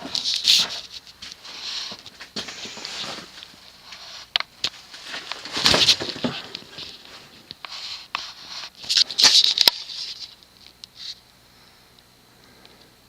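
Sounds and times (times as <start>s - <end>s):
rustling and scraping: 0.0s - 10.4s.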